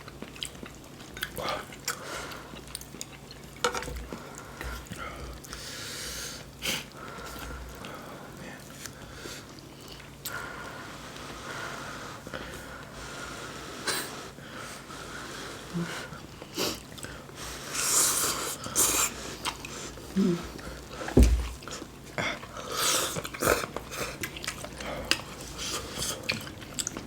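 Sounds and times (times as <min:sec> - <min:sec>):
chewing: 0:00.0 - 0:05.7, 0:06.9 - 0:10.4, 0:16.1 - 0:17.4, 0:18.1 - 0:27.0
airy slurps and breaths: 0:04.0 - 0:27.0
dull knock: 0:21.2 - 0:21.5.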